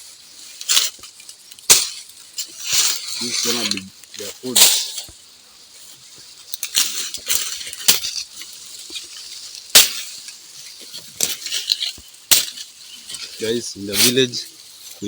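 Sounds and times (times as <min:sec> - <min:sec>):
dry leaves rustling: 0:00.0 - 0:15.0
dry stalks cracking when chopped: 0:00.6 - 0:05.2, 0:06.5 - 0:13.3.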